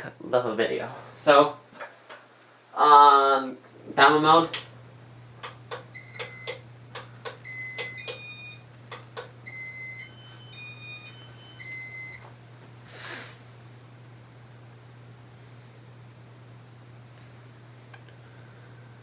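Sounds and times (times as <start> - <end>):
steady low hum: 0.0 - 19.0
sharp clicks: 5.4 - 8.2, 8.9 - 9.4.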